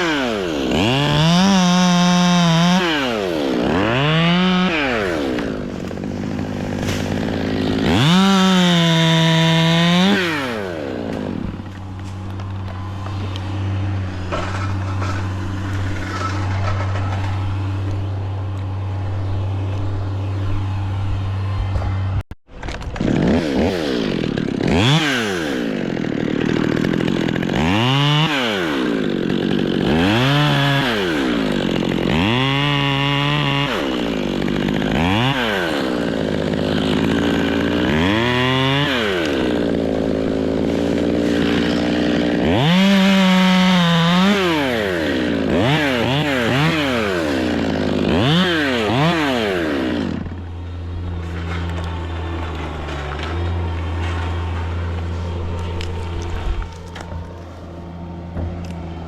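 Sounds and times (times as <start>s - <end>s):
chainsaw revving: 0.0s - 18.8s, 22.7s - 59.0s.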